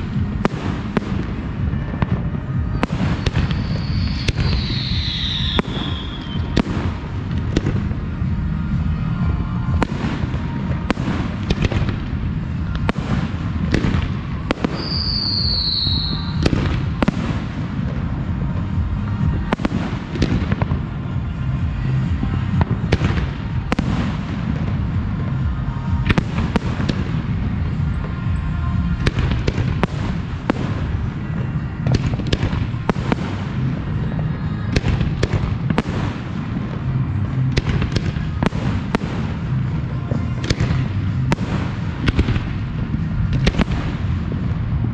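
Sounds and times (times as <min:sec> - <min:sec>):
firework shell bursts and crackling: 0:00.0 - 0:44.9
high falling whistle: 0:03.2 - 0:06.6, 0:14.8 - 0:16.4.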